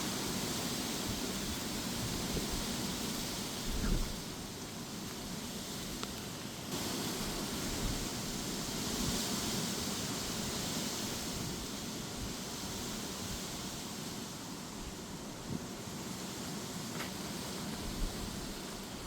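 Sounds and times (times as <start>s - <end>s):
gusty wind: 0.0s - 6.0s, 6.8s - 14.1s, 17.3s - 19.0s
rain: 0.0s - 19.0s.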